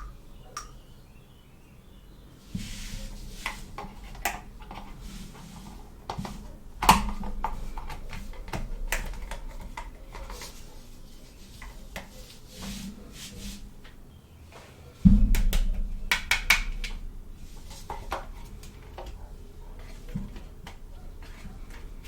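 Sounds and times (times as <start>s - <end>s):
knock on hard surface: 15.1s - 16.9s.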